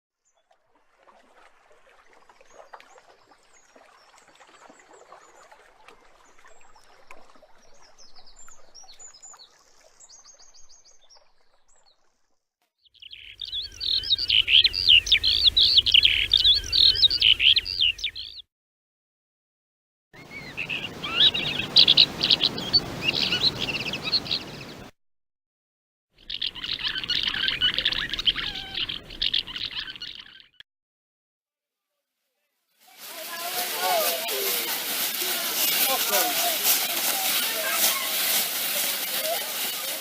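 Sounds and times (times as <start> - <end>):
birds singing: 13.0 - 18.4, 20.2 - 24.9, 26.2 - 30.6
soft rustling: 32.9 - 40.0.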